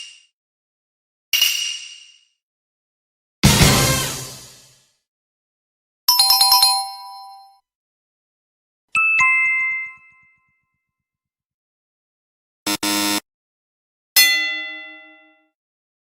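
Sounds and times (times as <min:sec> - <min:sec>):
buzzy electronic tone: 0:12.7 - 0:13.2.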